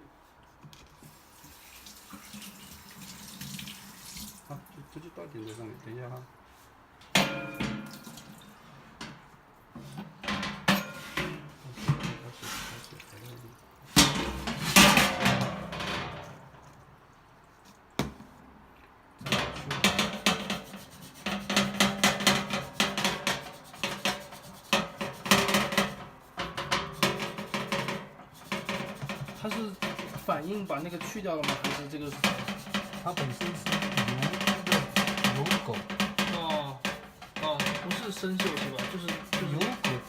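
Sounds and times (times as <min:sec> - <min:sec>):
scourer scrubbing metal surface: 0:19.3 - 0:40.0.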